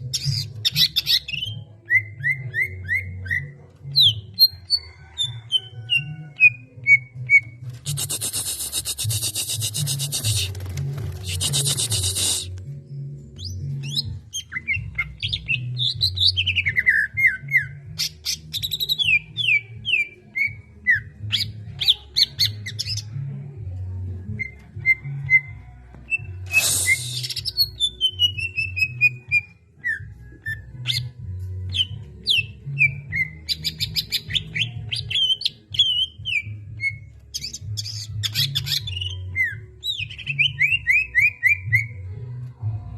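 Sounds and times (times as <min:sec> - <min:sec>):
background music with low beat: 0:00.0 - 0:42.9
bird chirping and whistling: 0:07.4 - 0:10.5, 0:11.2 - 0:12.5, 0:26.5 - 0:31.1, 0:31.7 - 0:41.9.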